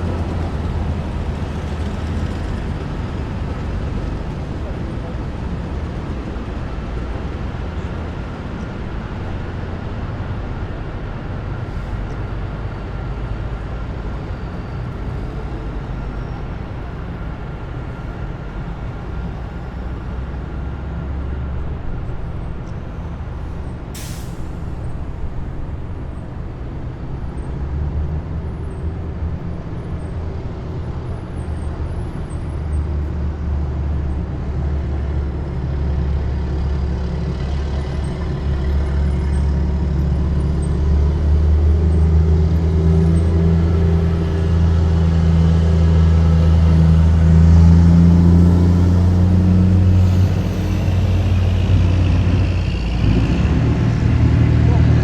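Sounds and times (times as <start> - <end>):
heavy diesel vehicles rumbling past: 0.0 - 55.0
air brake hiss: 24.0 - 25.0.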